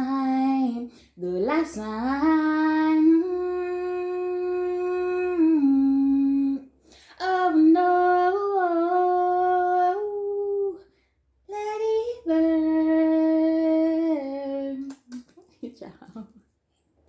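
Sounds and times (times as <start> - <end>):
breaths: 0.9 - 1.2, 6.7 - 7.2.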